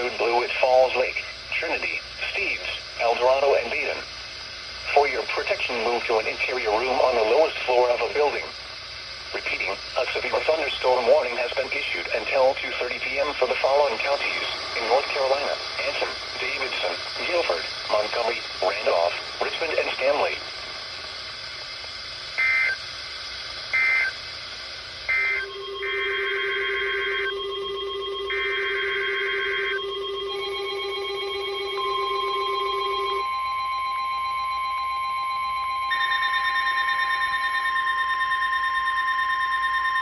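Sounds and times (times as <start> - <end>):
steady pulsing tones: 0.0 - 22.1, 25.1 - 40.0
buzzy data bursts: 4.7 - 40.0
long steady alert tone: 25.1 - 40.0.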